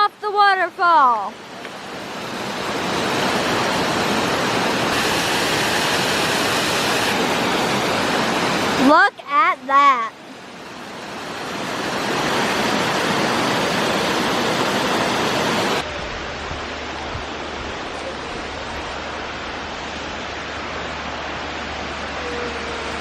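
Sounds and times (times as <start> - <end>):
waterfall roaring: 0.0 - 23.0
steady hiss: 1.3 - 9.1.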